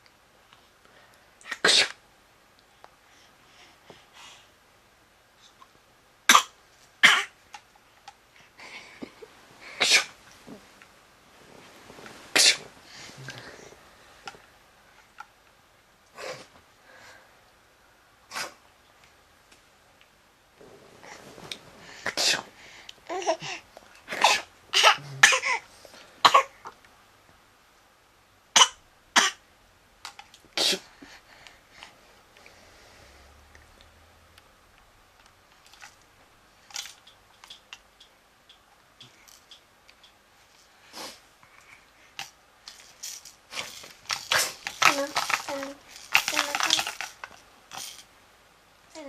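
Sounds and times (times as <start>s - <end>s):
mock sneezes: 9.7s - 10.2s, 12.3s - 12.7s.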